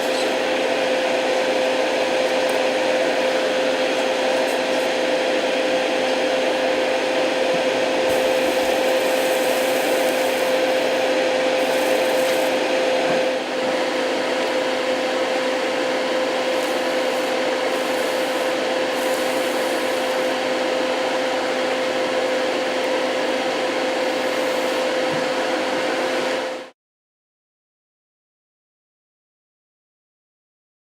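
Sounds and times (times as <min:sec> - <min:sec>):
small electric motor whirring: 0:00.0 - 0:00.6, 0:03.8 - 0:05.2, 0:08.1 - 0:13.0, 0:16.3 - 0:20.6, 0:23.8 - 0:25.1.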